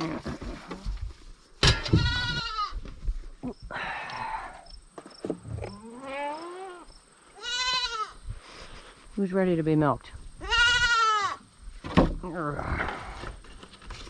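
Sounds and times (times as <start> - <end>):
goats bleating: 1.8 - 2.8, 5.8 - 8.2, 10.4 - 11.4.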